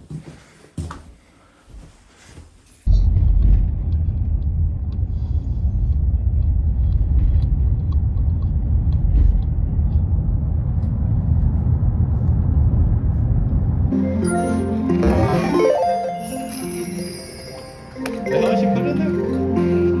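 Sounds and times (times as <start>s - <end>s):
loud low rumble: 2.9s - 14.0s.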